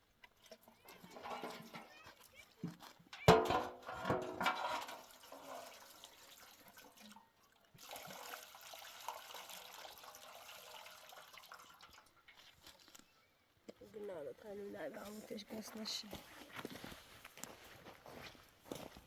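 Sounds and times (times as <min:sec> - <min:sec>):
water running and splashing: 0:03.2 - 0:12.8.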